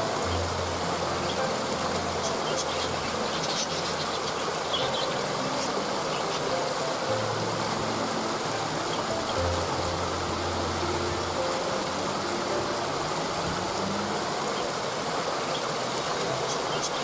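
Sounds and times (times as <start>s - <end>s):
waterfall rushing: 0.0s - 17.0s
high bird chirps: 2.1s - 6.8s.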